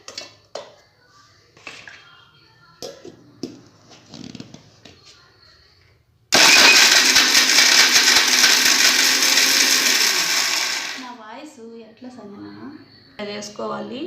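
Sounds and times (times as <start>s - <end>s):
electric mixer grinder grinding: 6.4s - 11.1s.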